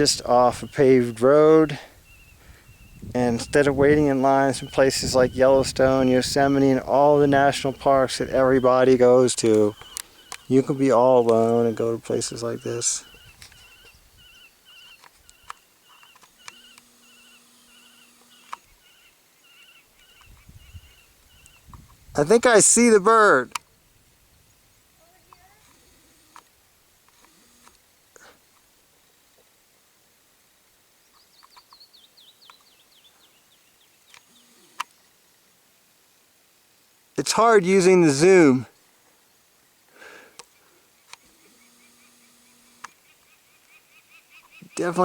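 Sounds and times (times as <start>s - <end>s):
bird trilling: 0.0s - 21.7s, 41.2s - 45.0s
sharp clicks: 9.4s - 10.6s, 14.9s - 18.7s, 40.3s - 43.0s.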